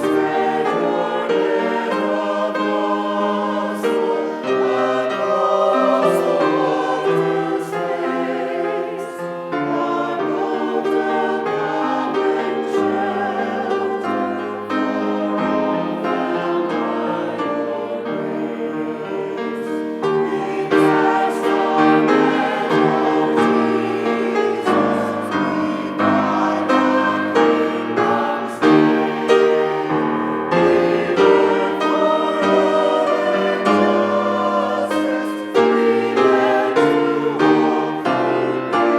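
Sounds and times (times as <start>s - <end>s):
group singing a hymn: 0.0s - 38.9s.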